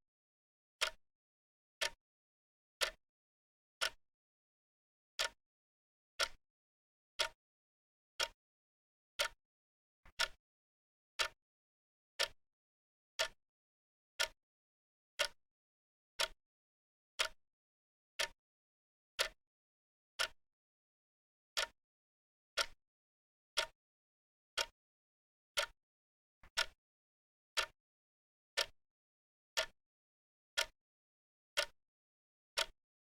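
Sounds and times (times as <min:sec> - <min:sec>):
wrist watch ticking: 0:26.5 - 0:26.8, 0:28.6 - 0:28.8, 0:30.6 - 0:30.8, 0:31.6 - 0:31.8, 0:32.6 - 0:32.8.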